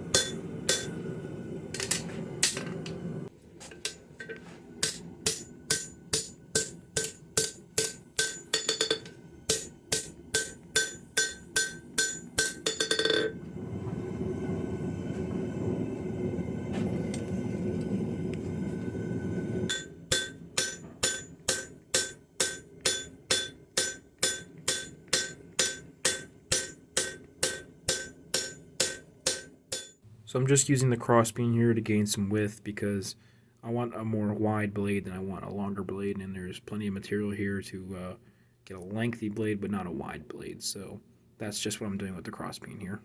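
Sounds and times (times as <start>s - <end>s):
hammer striking steel on anvil: 0.0s - 1.1s, 3.8s - 13.4s, 19.7s - 30.0s.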